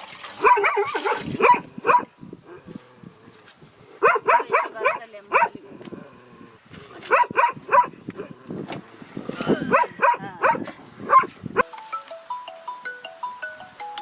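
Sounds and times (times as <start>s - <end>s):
mallet percussion tune: 11.6s - 14.0s.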